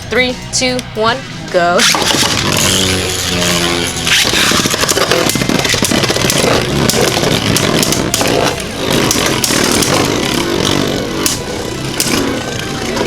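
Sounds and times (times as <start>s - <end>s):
spinning tops whirring and scraping: 1.7s - 13.0s
plastic tops clashing: 1.8s - 10.2s.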